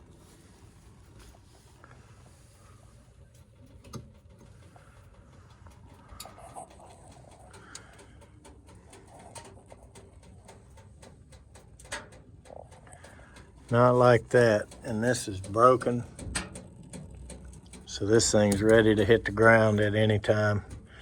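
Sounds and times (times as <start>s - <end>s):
handling clicks and knocks: 3.5s - 21.0s
dove cooing: 3.6s - 18.5s.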